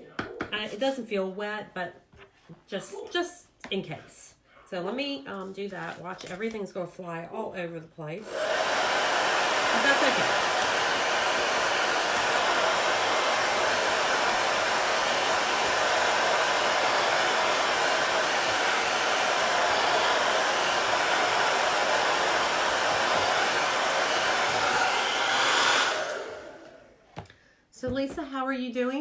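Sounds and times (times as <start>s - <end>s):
hair dryer blowing: 8.2s - 27.3s.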